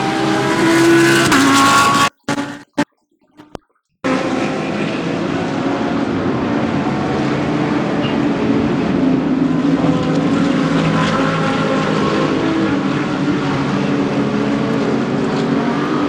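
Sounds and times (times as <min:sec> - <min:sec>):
race car engines passing: 0:00.0 - 0:02.8, 0:04.0 - 0:16.0.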